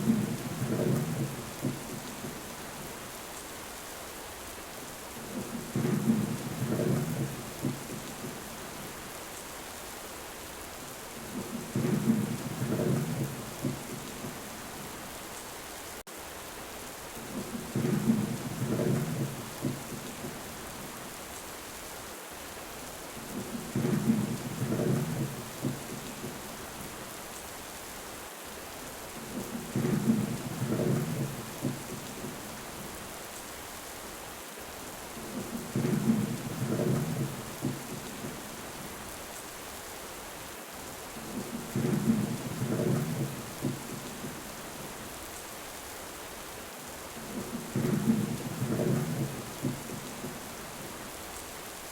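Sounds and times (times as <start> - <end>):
heavy rain: 0.0 - 51.9
thunder rumbling: 41.2 - 44.4, 47.2 - 50.4.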